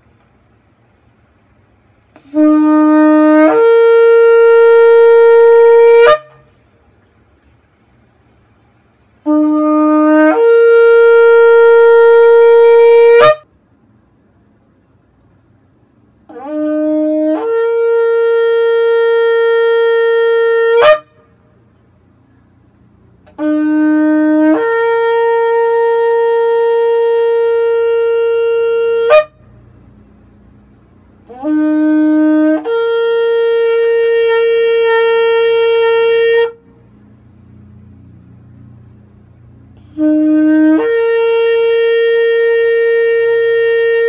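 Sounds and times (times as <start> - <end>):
shofar blasts: 2.1 - 6.6, 9.2 - 13.5, 16.3 - 21.4, 23.2 - 29.5, 31.2 - 36.9, 39.7 - 44.0.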